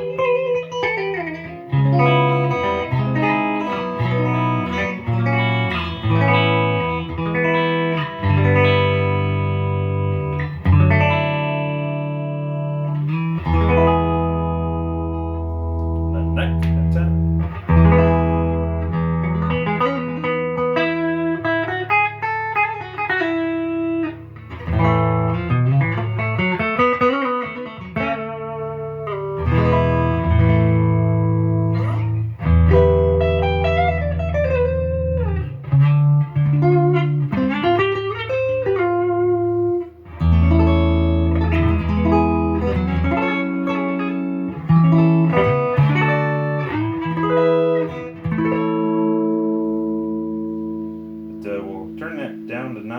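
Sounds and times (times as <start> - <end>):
electric guitar through amp: 0.0 - 52.9.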